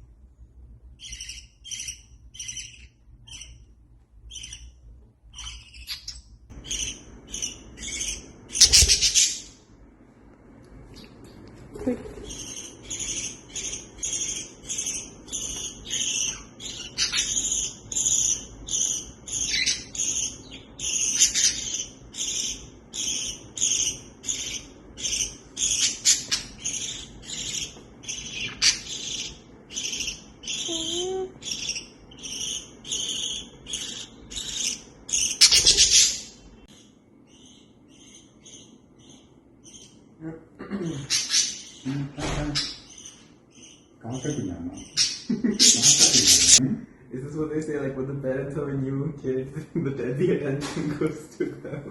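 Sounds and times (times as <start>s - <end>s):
budgie chirping: 0.9s - 9.6s, 12.2s - 40.0s, 42.5s - 46.6s.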